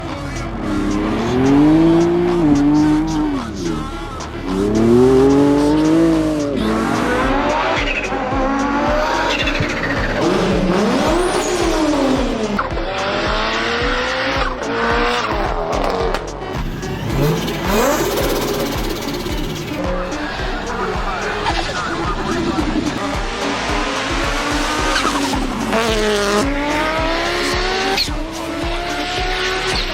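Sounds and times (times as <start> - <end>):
car engines revving hard: 0.0 - 29.9
turbo whistle: 16.6 - 22.9.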